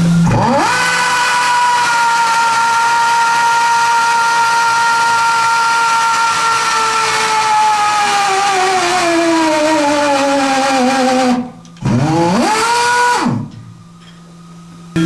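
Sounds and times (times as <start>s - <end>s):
tube roller motor running: 0.0s - 13.6s.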